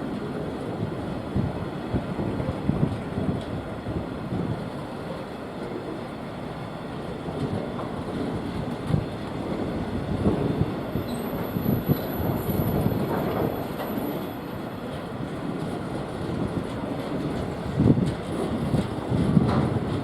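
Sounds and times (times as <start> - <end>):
train wheels rumbling on track: 0.0 - 20.0
thin high whine: 11.0 - 12.9.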